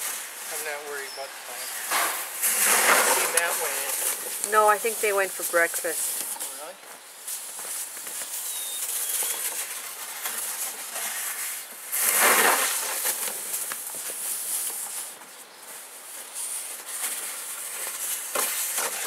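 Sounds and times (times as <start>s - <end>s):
shovel scraping wet snow: 8.4s - 13.3s.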